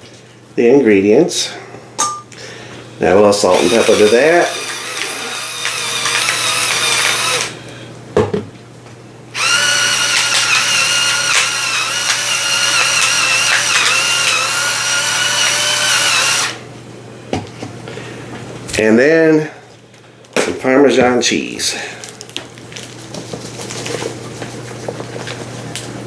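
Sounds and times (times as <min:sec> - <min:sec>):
electric grinder whirring: 0:03.5 - 0:07.6, 0:09.4 - 0:16.6.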